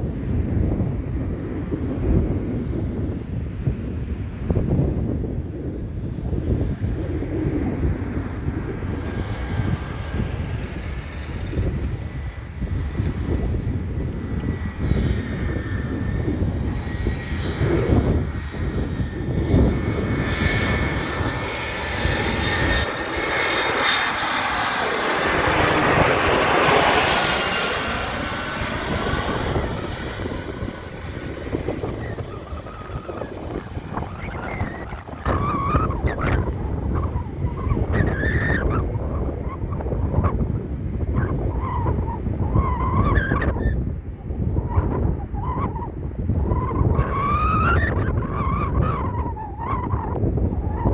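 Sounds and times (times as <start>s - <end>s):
jet engine whine falling in pitch: 0.0s - 40.5s, 41.1s - 50.9s
jet airliner passing: 0.0s - 50.9s
wind rumble on microphone: 0.0s - 50.9s.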